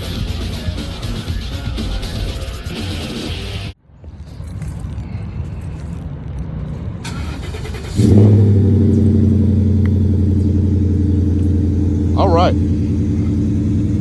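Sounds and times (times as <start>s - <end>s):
car engine starting and idling: 7.0s - 14.0s.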